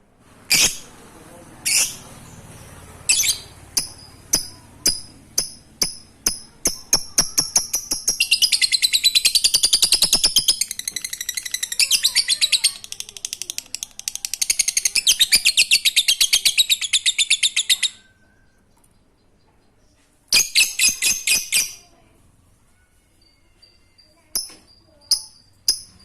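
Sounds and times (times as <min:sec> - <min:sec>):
lovebird chattering trill: 0:00.5 - 0:00.9, 0:01.6 - 0:02.0, 0:03.1 - 0:18.2.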